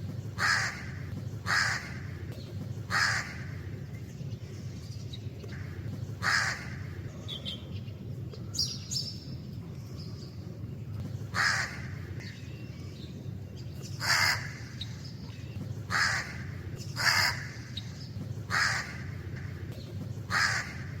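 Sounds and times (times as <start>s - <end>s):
low background rumble: 0.0s - 21.0s
crow cawing: 0.4s - 2.1s, 2.9s - 3.5s, 5.6s - 6.9s, 11.3s - 12.0s, 14.0s - 14.7s, 15.9s - 17.7s, 18.5s - 19.2s, 20.3s - 21.0s.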